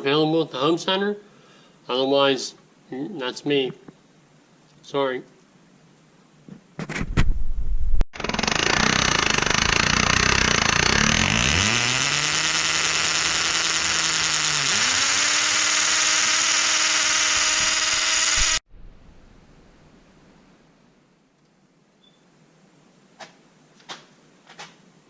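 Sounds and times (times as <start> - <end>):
power drill running: 8.2 - 18.6.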